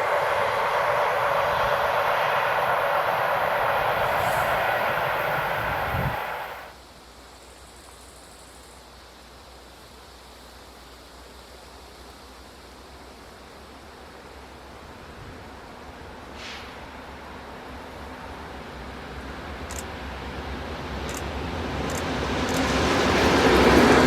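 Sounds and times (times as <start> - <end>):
train cars rushing past: 0.0 - 6.7, 15.9 - 24.0.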